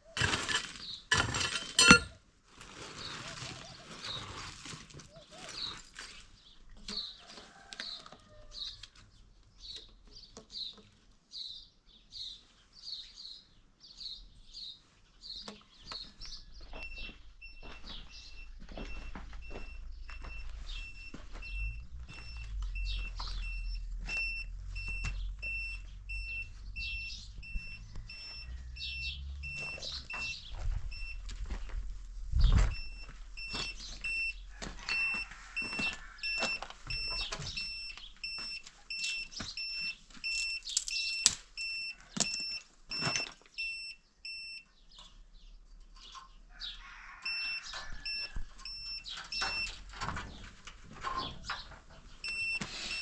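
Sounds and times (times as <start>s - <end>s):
rapid electronic beeping: 16.8s - 31.3s, 32.7s - 42.6s
low rumble: 19.0s - 29.6s.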